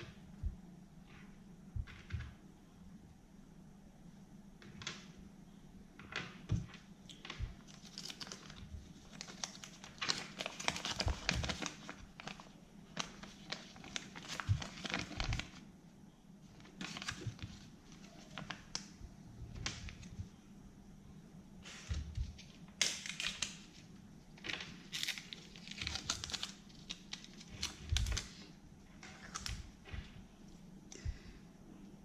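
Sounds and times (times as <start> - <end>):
candy wrapper crinkling: 7.6 - 15.6, 22.3 - 23.8, 24.4 - 28.4.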